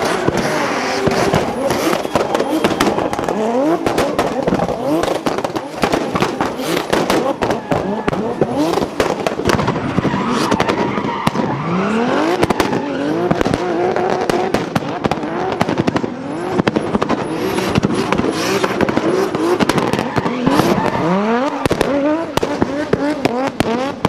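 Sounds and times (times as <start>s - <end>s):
tyres squealing: 0.0s - 9.0s
car engine revving hard: 0.0s - 24.0s
anti-lag cracks and bangs: 0.2s - 11.6s.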